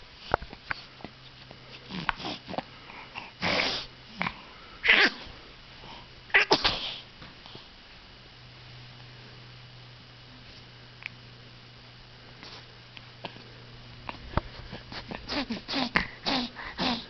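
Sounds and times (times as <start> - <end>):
baby sneezing: 4.8 - 5.3, 6.3 - 7.0, 15.3 - 17.0.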